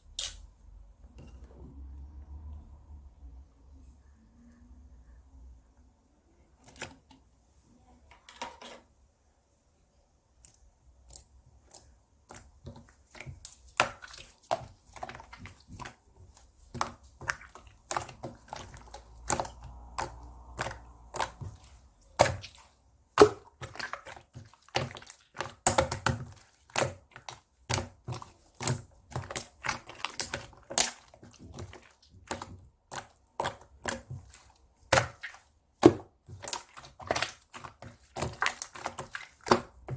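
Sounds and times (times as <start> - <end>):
slime squished with sticky clicks: 10.4 - 12.6.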